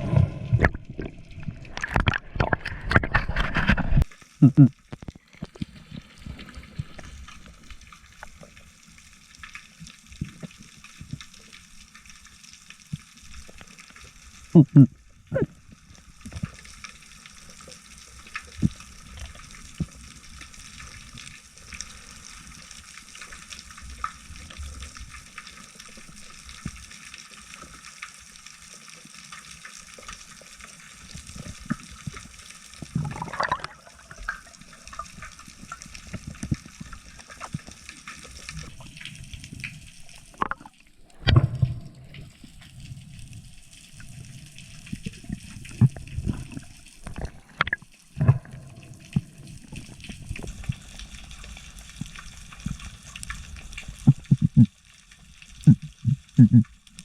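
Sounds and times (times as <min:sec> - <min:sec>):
rush of water: 0:00.0 - 0:08.4, 0:32.8 - 0:43.4
underwater hiss with crackling clicks: 0:01.7 - 0:57.0.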